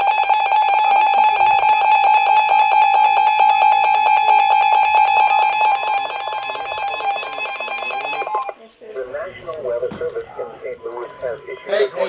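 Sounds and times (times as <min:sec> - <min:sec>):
weather radio alert alarm: 0:00.0 - 0:08.6.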